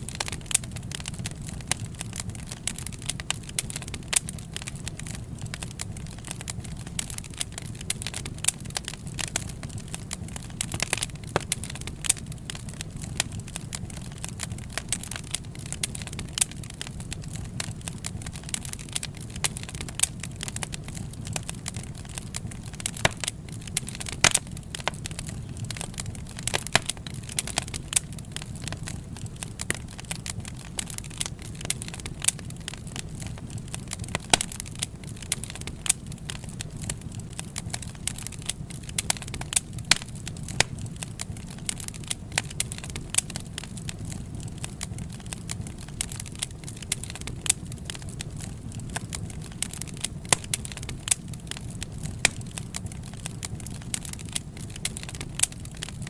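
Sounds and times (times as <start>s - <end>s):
fire flame rushing: 0.0s - 56.0s
logs crackling and popping: 0.0s - 56.0s.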